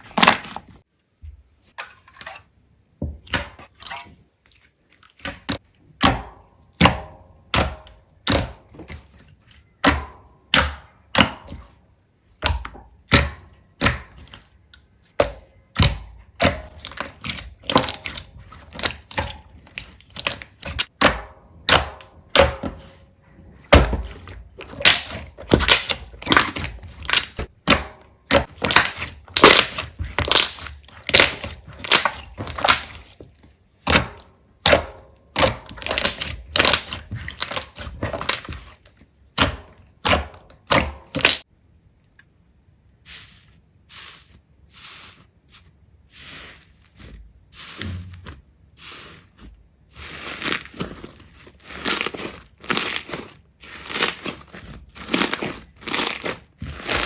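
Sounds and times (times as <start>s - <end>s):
slime squeezed crackling and popping: 24.6s - 33.1s, 35.4s - 38.7s, 51.6s - 57.0s.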